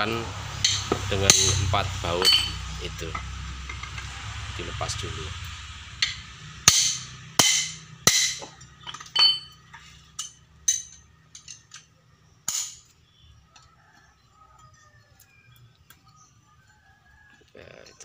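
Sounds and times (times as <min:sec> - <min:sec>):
metal tools clinking and knocking: 0:00.6 - 0:04.1, 0:06.0 - 0:13.0.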